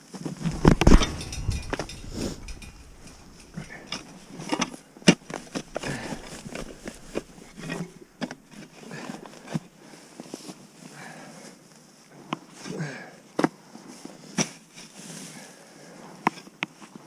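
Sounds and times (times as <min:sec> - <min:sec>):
rustles: 0:00.0 - 0:09.6
scrapes: 0:00.2 - 0:09.6
knocks: 0:00.4 - 0:04.3.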